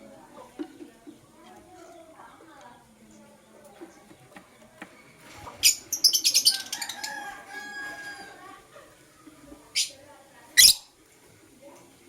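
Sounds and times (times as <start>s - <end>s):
lovebirds calling: 3.0s - 10.0s, 10.6s - 11.0s.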